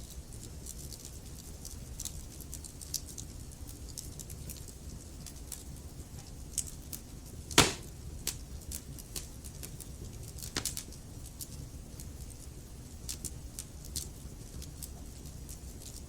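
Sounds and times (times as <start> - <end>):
burning logs crackling and popping: 10.4 - 11.0.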